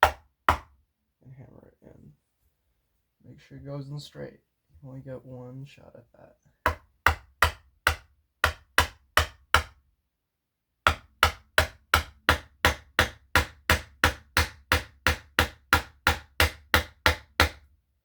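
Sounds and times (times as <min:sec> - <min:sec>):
hammer striking a block: 0:00.0 - 0:00.8, 0:06.6 - 0:09.8, 0:10.9 - 0:17.6.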